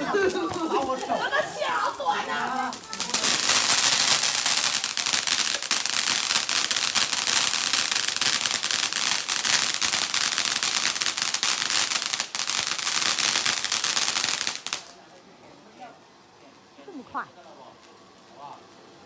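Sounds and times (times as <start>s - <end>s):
fireworks popping and crackling: 0.0s - 15.2s.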